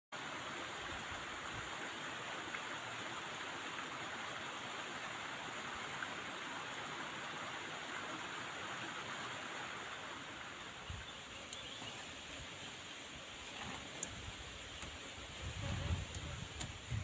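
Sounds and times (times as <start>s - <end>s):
small ticks: 11.4s - 11.7s.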